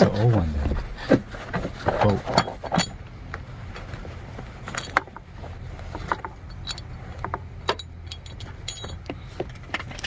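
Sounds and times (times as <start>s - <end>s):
low steady rumble: 0.0s - 10.0s
metal tools clinking: 1.9s - 3.0s, 4.6s - 5.1s, 6.0s - 9.1s.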